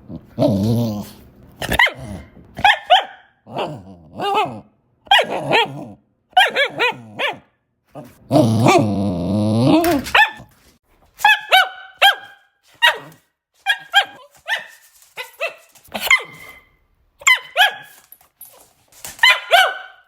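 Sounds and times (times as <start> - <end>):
dog growling bark: 0.0 - 10.5
dog barking: 1.6 - 8.1, 10.0 - 10.6, 11.2 - 18.0, 19.2 - 20.0.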